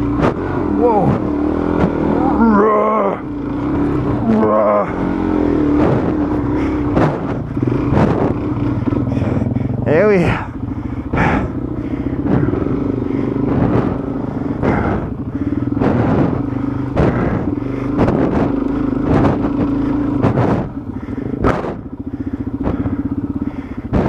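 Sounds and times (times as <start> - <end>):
thumps and clatter: 0.0 - 2.2, 5.7 - 9.6, 11.1 - 24.0
motorcycle engine: 0.0 - 24.0.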